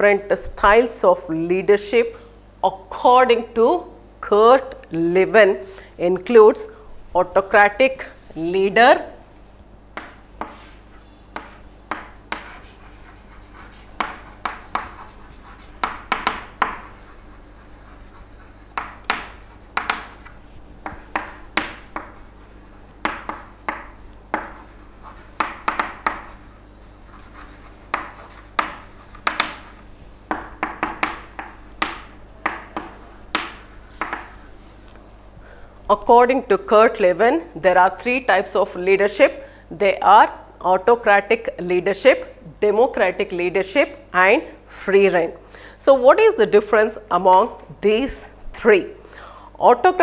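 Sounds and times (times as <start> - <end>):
faint steady hum: 0.0 - 50.0
pen scratching while writing: 10.0 - 20.2, 20.8 - 32.1.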